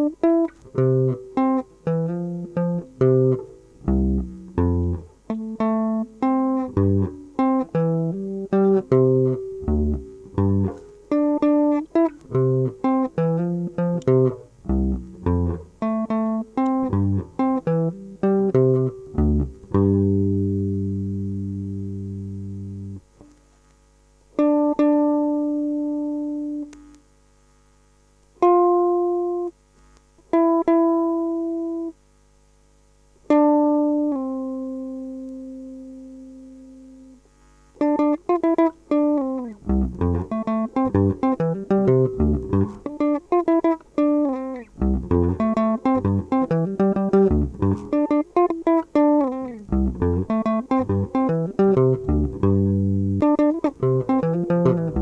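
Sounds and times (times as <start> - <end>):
bass guitar: 0.0 - 23.1, 37.9 - 55.0
guitar picking notes: 0.0 - 23.4, 24.3 - 27.0, 28.4 - 29.6, 30.3 - 32.0, 33.2 - 37.2, 37.8 - 55.0.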